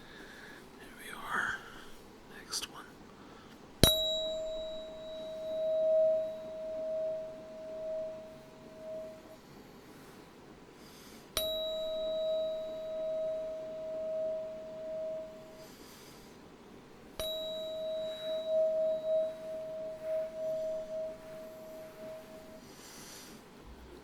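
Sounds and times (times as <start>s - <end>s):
tuning fork ringing: 3.8s - 9.8s, 11.3s - 16.4s, 17.0s - 22.9s.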